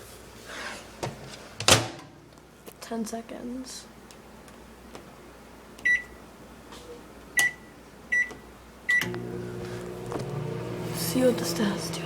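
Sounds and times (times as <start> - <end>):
microwave keypad beeping: 5.8 - 6.2, 7.4 - 9.2
microwave oven humming: 7.3 - 12.0.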